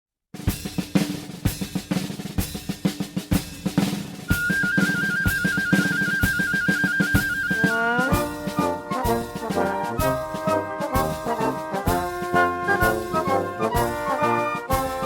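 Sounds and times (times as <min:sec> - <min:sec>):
snare drum rolls: 0:00.4 - 0:15.0
brass chords: 0:07.5 - 0:15.0.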